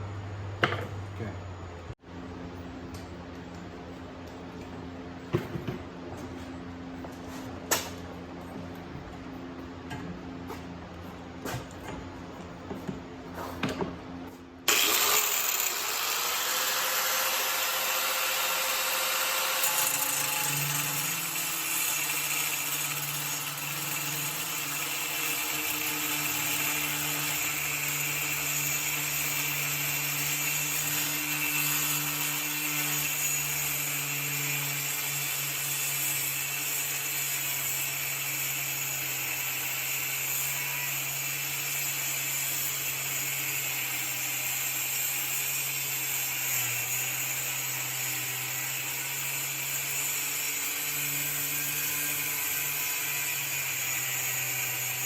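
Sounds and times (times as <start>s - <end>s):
electric grinder grinding steel: 14.7s - 55.0s.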